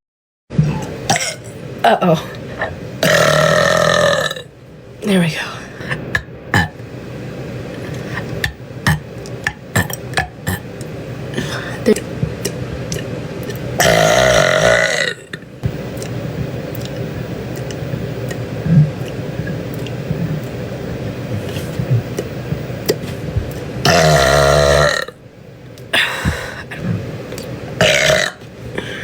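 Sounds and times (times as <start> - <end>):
woman burping loudly: 1.1 - 4.5, 13.8 - 15.4, 23.8 - 25.2, 27.8 - 28.4.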